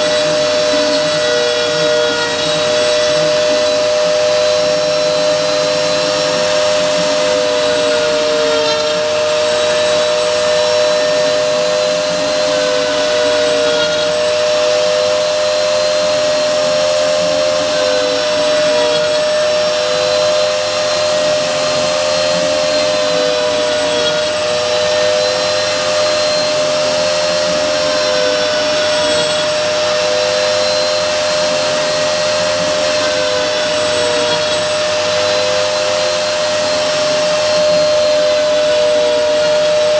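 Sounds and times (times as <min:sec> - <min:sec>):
cutter tone dipping under load: 0:00.0 - 0:39.9
router spindle motor whine: 0:00.0 - 0:39.9.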